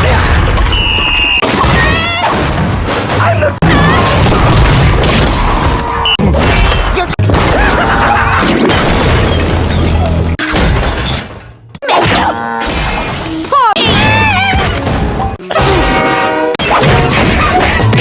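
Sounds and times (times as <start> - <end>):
crashing and shattering effects: 1.4 - 18.0
music: 9.4 - 18.0.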